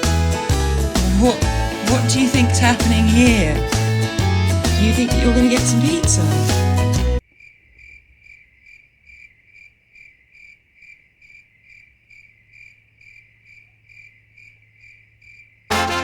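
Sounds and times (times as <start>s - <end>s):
cricket chirping: 7.2s - 15.7s.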